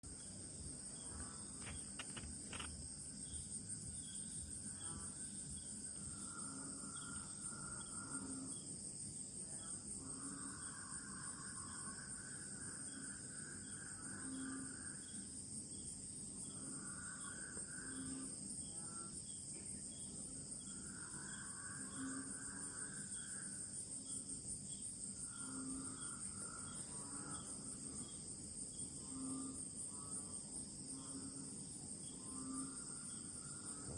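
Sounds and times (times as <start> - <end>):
high insect drone: 0.0 - 33.9
frogs mooing calls: 6.0 - 8.7, 10.0 - 15.2, 16.4 - 19.2, 20.7 - 24.2, 25.2 - 33.9.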